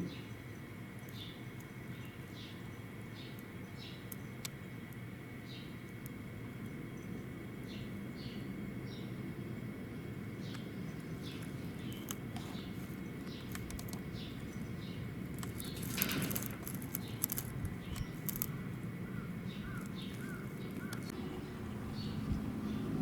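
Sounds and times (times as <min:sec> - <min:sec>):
small birds chirping: 0:00.0 - 0:23.0
steady background hum: 0:00.0 - 0:23.0
rustle and clicks: 0:10.4 - 0:21.2.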